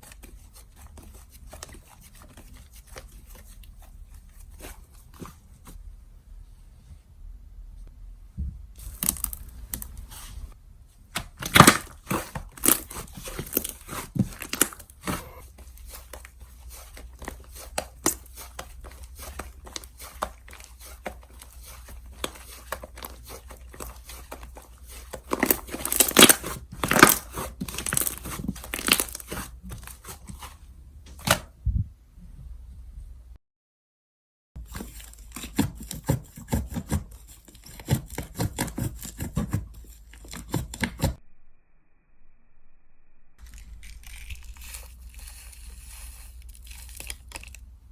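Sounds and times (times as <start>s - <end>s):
sticky clicks and crackling pops: 11.2s - 15.4s, 46.4s - 47.7s
slime squeezed by hand: 43.4s - 47.6s.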